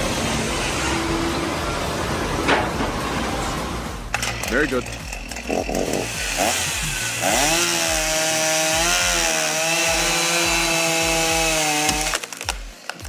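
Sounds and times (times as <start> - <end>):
chainsaw cutting wood: 4.4 - 13.0.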